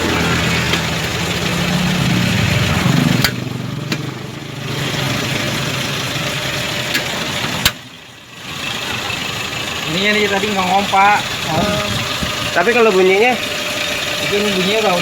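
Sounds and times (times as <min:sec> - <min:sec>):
car engine idling: 0:00.0 - 0:15.0.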